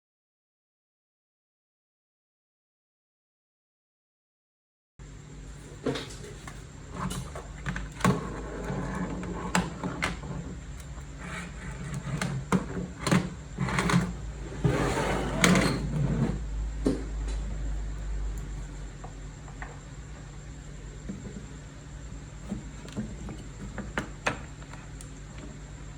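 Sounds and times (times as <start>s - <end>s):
scraping rub: 11.0s - 12.2s.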